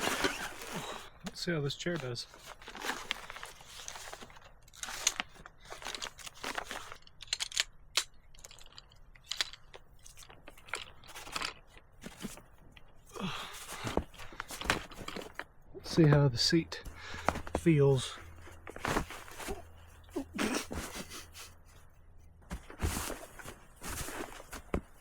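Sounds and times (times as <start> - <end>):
chair fabric crunching: 0.0 - 1.2, 17.0 - 21.5.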